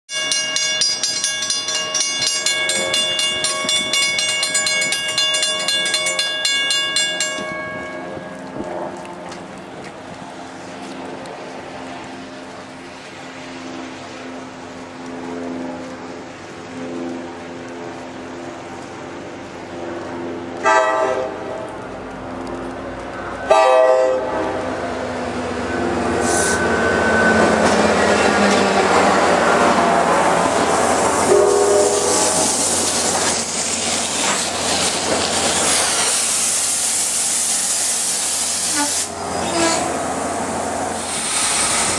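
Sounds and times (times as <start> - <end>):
train clicking over rails: 0.1 - 41.9
locomotive air horn: 20.6 - 21.4, 23.5 - 24.5, 31.2 - 32.6, 38.6 - 40.0.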